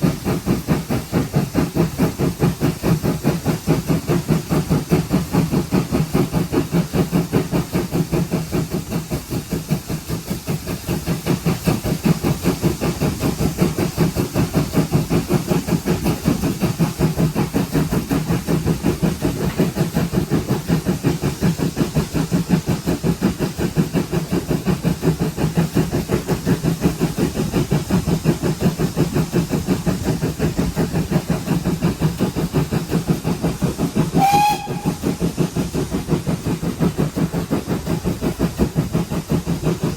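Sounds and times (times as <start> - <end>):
steam hiss: 0.0 - 39.9
steam locomotive chuffing: 0.0 - 39.9
short whistle-like tone: 34.2 - 35.1.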